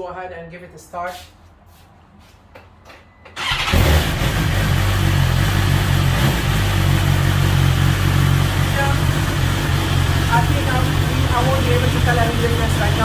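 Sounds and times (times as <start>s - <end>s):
engine starter turning: 3.4s - 5.2s
motorcycle engine idling: 3.4s - 13.0s.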